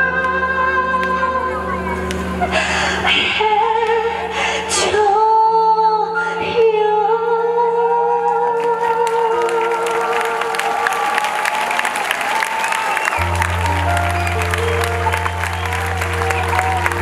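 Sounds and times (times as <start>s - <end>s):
audience applause: 8.6s - 17.0s
backing track: 13.0s - 17.0s.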